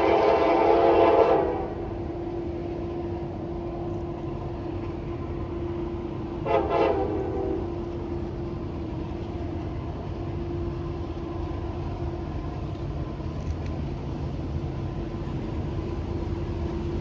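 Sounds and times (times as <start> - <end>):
locomotive air horn blasts: 0.0 - 2.0, 6.4 - 7.8.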